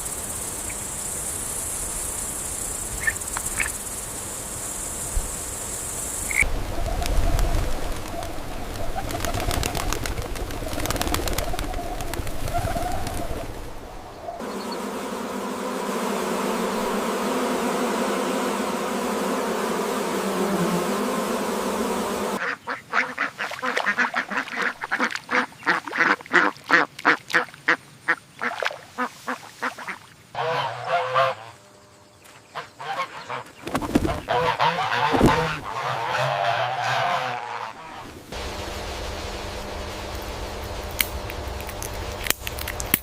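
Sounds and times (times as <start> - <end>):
ducks quacking: 22.4 - 31.6, 32.5 - 38.2
steady dense noise: 38.3 - 43.0.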